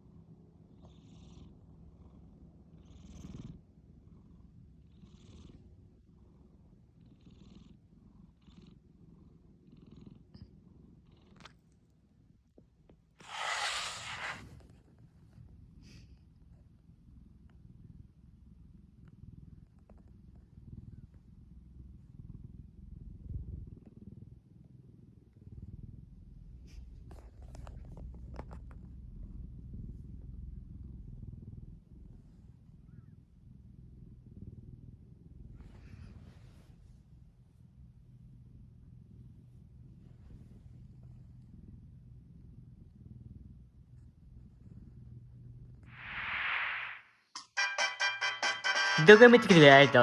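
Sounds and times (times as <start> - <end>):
cat snoring: 0.7 - 3.7, 4.8 - 5.7, 7.0 - 10.4, 13.2 - 14.6.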